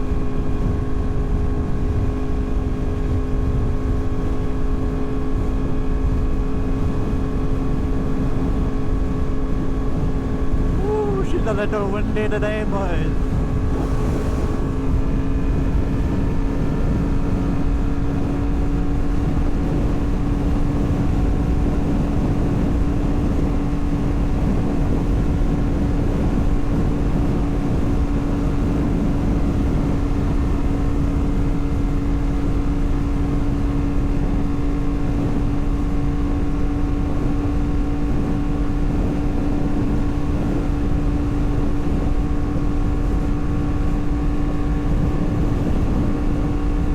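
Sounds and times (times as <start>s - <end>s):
wind noise on microphone: 13.1s - 46.9s.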